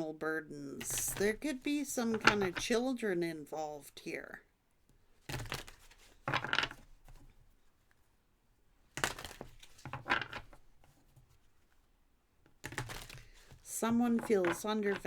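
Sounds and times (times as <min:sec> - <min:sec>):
cards being shuffled: 0:00.8 - 0:02.8, 0:05.3 - 0:07.2, 0:09.0 - 0:10.9, 0:12.5 - 0:15.0.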